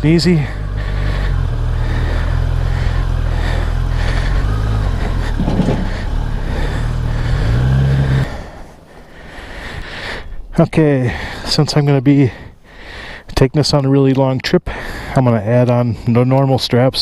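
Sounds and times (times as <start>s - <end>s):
motorcycle engine running: 0.0s - 9.3s.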